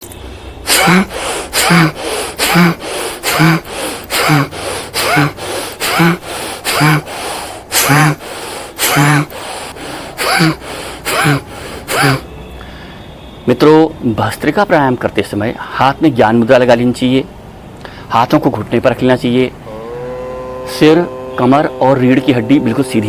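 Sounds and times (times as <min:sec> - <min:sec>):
forceful breathing through nose: 0:00.2 - 0:13.2, 0:17.8 - 0:18.1
short vocal hum: 0:00.7 - 0:12.2, 0:19.6 - 0:23.0.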